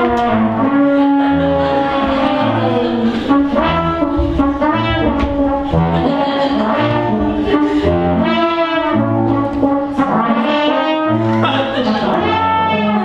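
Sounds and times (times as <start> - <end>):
brass music with bass line: 0.0 - 13.0.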